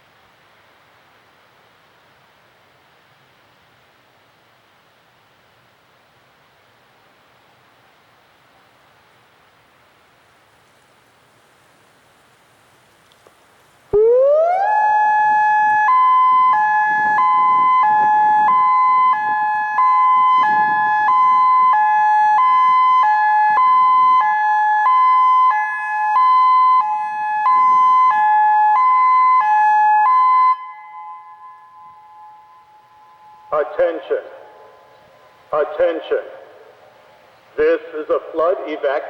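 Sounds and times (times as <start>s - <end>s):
electronic warning siren: 13.9s - 35.8s.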